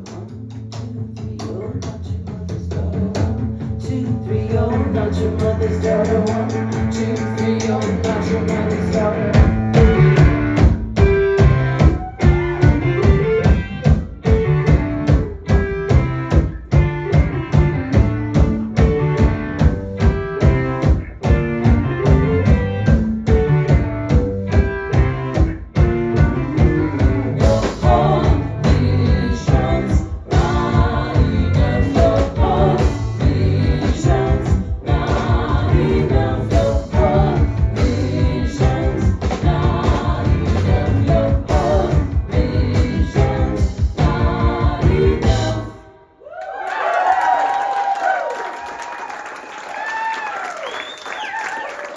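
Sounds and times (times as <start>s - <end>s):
person singing: 0.0s - 10.4s, 26.5s - 46.1s
live rock band playing: 5.1s - 45.8s.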